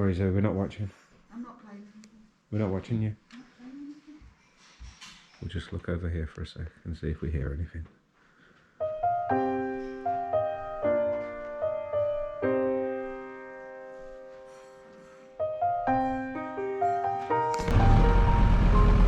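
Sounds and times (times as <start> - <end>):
acoustic piano played slowly: 8.8 - 19.0.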